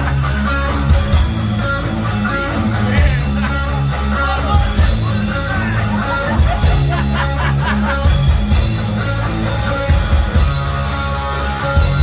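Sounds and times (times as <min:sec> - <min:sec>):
heavy metal band playing live: 0:00.0 - 0:12.0.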